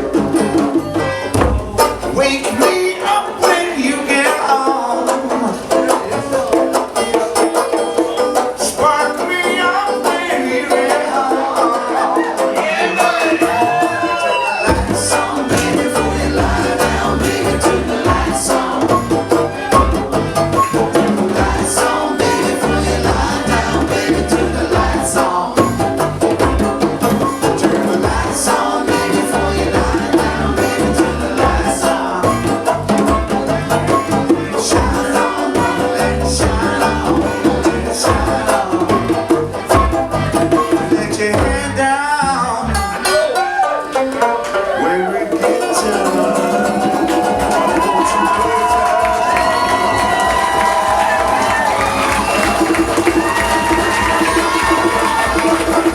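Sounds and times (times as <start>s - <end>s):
live band playing: 0.0s - 55.9s
steady drums: 0.0s - 55.9s
pulsing bass line: 14.7s - 43.2s.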